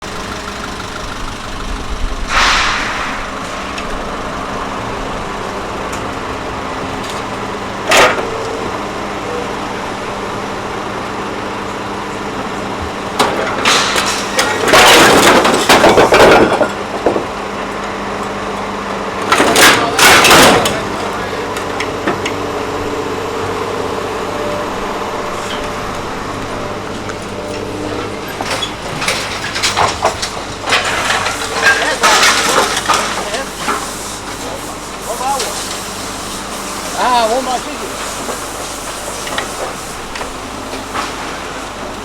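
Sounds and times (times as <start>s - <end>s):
truck engine idling: 0.0s - 42.0s
clattering scraping bursts: 2.2s - 4.1s, 12.8s - 17.4s, 19.2s - 22.3s, 25.2s - 41.9s.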